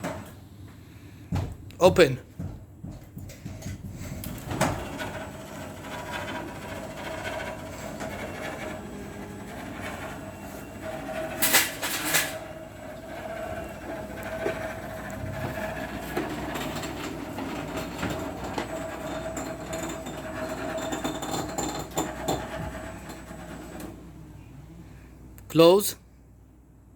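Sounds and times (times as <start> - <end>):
loud metal clatter: 4.4 - 23.3.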